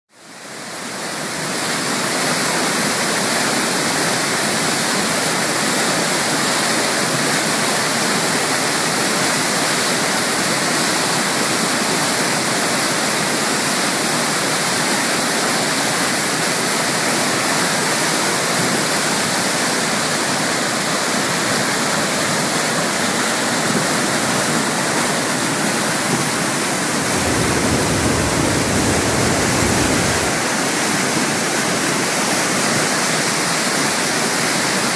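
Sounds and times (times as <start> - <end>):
waterfall rushing: 0.5 - 34.9
deep low rumble: 27.0 - 30.4.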